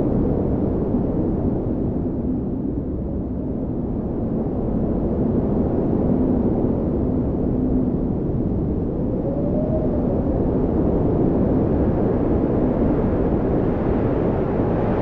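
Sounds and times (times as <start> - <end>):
wind rushing over microphone: 0.0 - 15.0.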